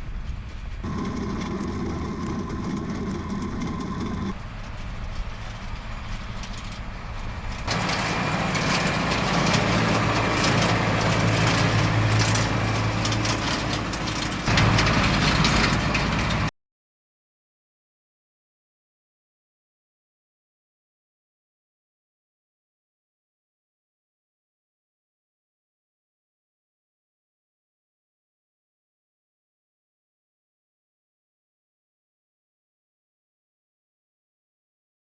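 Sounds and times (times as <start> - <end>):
rushing noise: 0.0 - 16.5
tractor engine running: 0.0 - 16.5.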